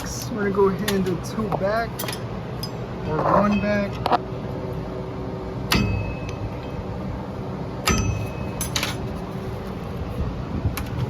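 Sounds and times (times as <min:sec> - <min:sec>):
sharp metallic clinks: 0:01.9 - 0:04.0, 0:05.7 - 0:06.9, 0:07.8 - 0:09.1.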